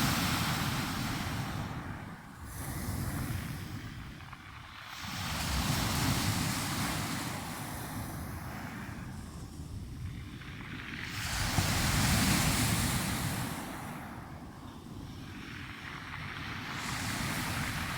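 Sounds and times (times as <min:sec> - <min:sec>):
sea waves breaking on shore: 0:00.0 - 0:17.9
wind buffeting microphone: 0:00.0 - 0:17.9.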